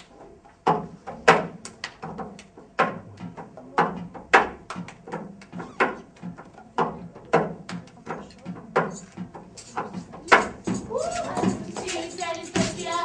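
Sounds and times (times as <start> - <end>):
sharp knocks and clacks: 0.0 - 10.8, 11.4 - 13.0.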